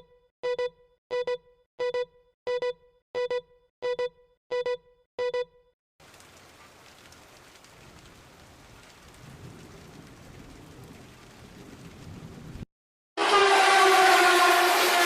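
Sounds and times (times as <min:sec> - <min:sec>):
electronic double beep: 0:00.4 - 0:05.6
rain-like hiss: 0:06.0 - 0:12.6.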